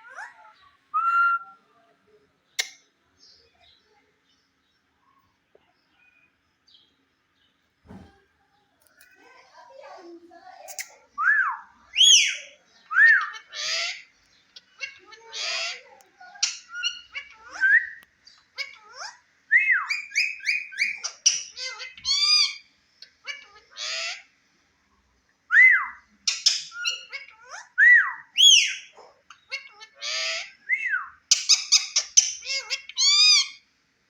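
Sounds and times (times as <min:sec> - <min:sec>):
parakeet whistling and squawking: 0:10.7 - 0:24.3, 0:25.6 - 0:33.6.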